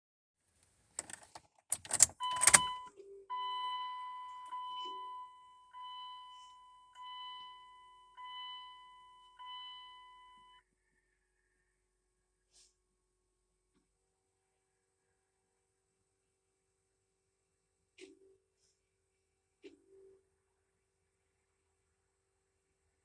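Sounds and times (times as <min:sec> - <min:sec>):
sharp clicks and knocks: 0:01.0 - 0:02.7
dashboard warning chime: 0:01.0 - 0:10.6.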